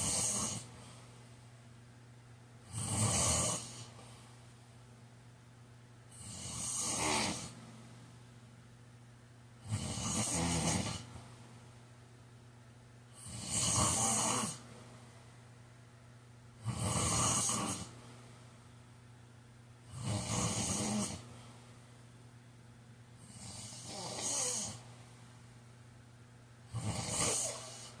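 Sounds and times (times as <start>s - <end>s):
man snoring: 0.0s - 0.7s, 2.7s - 3.9s, 6.1s - 7.6s, 9.6s - 11.1s, 13.2s - 14.6s, 16.6s - 17.9s, 19.9s - 21.2s, 23.2s - 24.8s, 26.7s - 28.0s.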